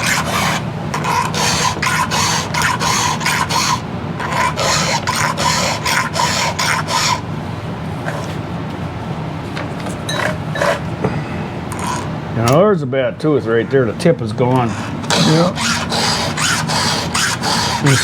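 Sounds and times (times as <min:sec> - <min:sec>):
file rasping on chainsaw chain: 0:00.0 - 0:07.2, 0:14.7 - 0:18.0.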